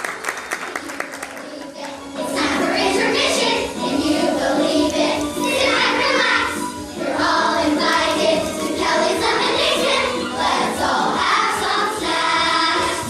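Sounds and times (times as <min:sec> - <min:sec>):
musical accompaniment: 0:00.0 - 0:13.0
group of young voices singing: 0:01.2 - 0:13.0.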